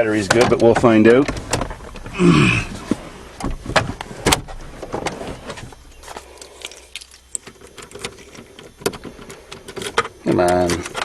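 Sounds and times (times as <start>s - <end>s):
clicks and knocks on car: 0.2s - 2.1s.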